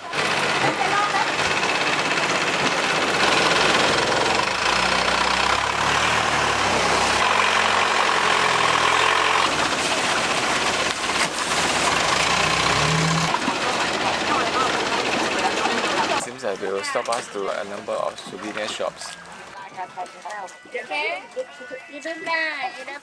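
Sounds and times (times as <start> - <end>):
motorboat engine running: 0.0 - 16.2.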